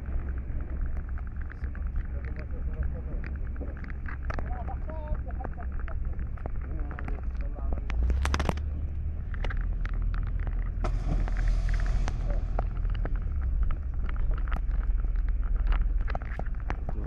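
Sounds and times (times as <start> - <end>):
boat engine rumbling: 0.0 - 17.0
knocks and clatter: 0.0 - 17.0
hissing: 10.6 - 16.8.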